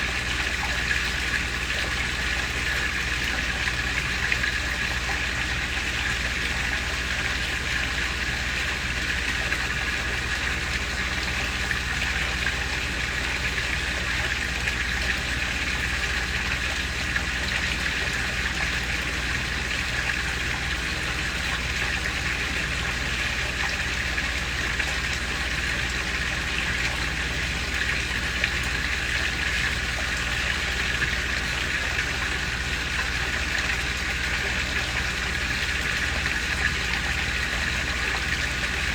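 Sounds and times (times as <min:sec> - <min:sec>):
waterfall splashing into pond: 0:00.0 - 0:38.9.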